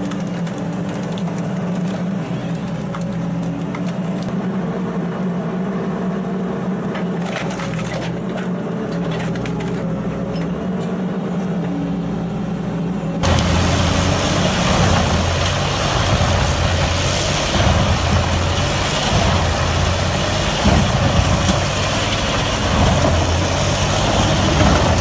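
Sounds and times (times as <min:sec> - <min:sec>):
heavy machine engine running: 0:00.0 - 0:25.0
wood cracking and splintering: 0:13.2 - 0:25.0.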